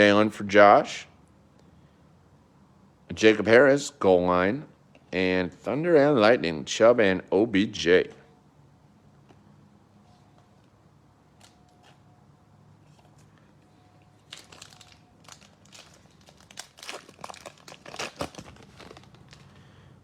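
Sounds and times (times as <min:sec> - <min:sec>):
foil wrapper tearing and crinkling: 0:14.2 - 0:19.6.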